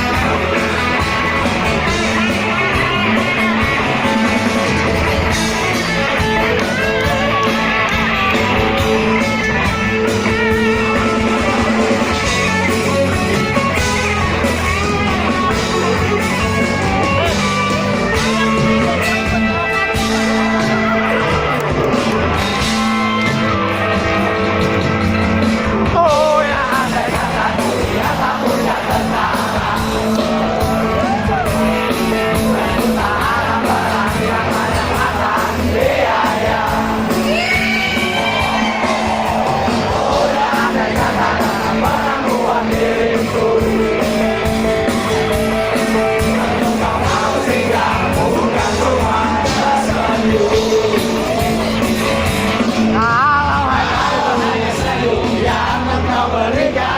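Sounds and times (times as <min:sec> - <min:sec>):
rock band playing: 0:00.0 - 0:56.9
person singing: 0:26.0 - 0:30.7, 0:46.0 - 0:51.9, 0:52.8 - 0:56.9.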